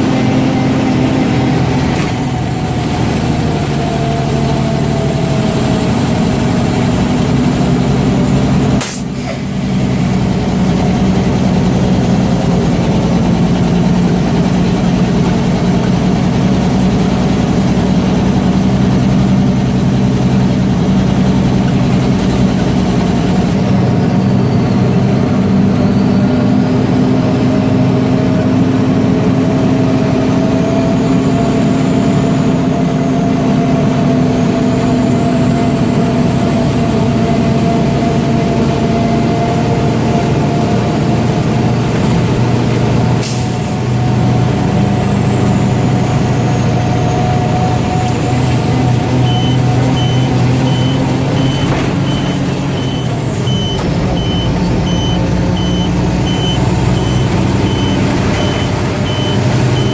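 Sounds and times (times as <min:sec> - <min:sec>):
diesel truck engine running: 0:00.0 - 0:59.9
reversing alarm beeping: 0:48.9 - 0:59.9.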